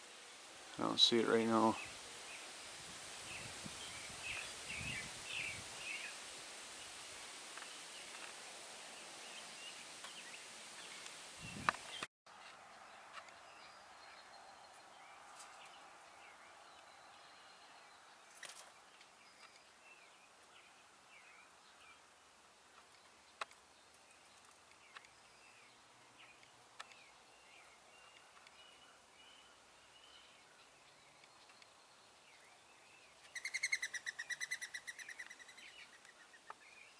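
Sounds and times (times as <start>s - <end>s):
faint songbirds chirping: 0.0s - 36.9s
bird rapid trill: 33.3s - 35.7s.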